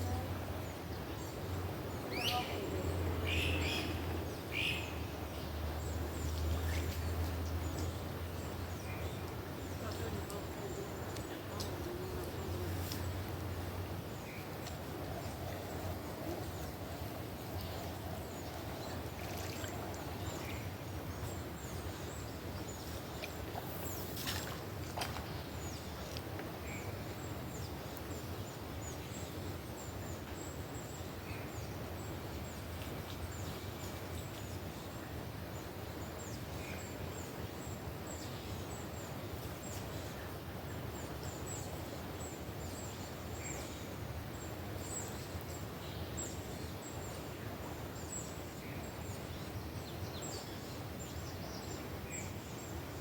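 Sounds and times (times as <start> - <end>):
river water rushing: 0.0 - 28.8.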